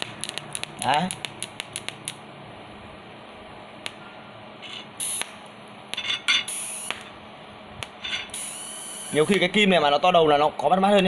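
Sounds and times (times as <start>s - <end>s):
welding torch hissing bursts: 0.0s - 2.2s, 4.7s - 5.6s, 6.3s - 7.2s, 7.8s - 9.6s.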